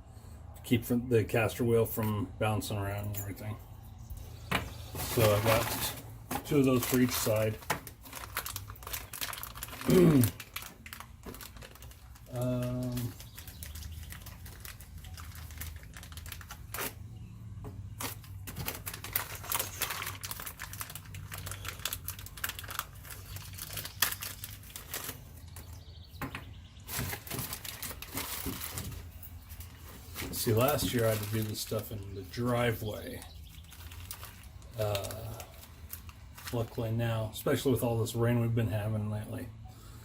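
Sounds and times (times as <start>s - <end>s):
packaging crinkling: 4.8s - 17.2s, 17.8s - 25.9s, 26.8s - 36.9s.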